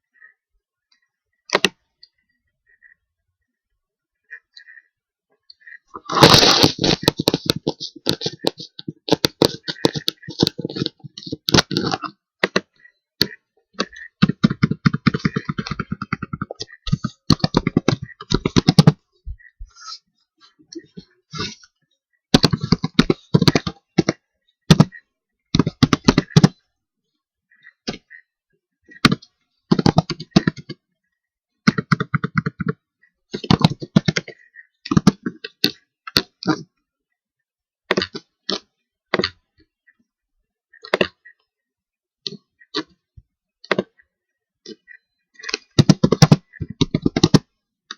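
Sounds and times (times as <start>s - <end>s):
computer keyboard typing: 6.1s - 19.0s, 22.3s - 26.6s, 29.0s - 30.8s, 31.6s - 36.6s, 45.4s - 47.5s.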